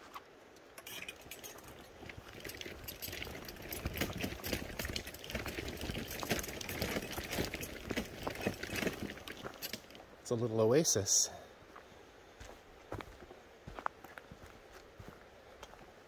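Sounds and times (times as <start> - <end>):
stream splashing over rocks: 1.8 - 9.5.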